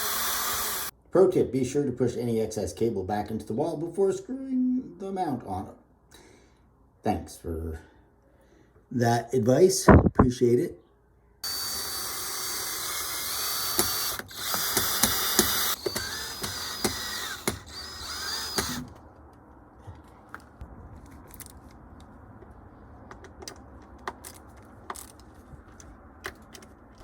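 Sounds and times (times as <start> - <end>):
power drill whining: 0.0 - 0.9, 11.4 - 19.0.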